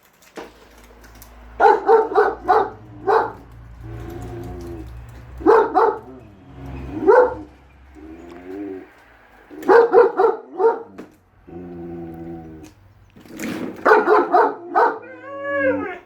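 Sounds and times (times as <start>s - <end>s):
dog barking loudly: 1.6s - 8.2s, 9.5s - 11.0s, 13.8s - 15.2s
dog howling: 14.8s - 16.0s.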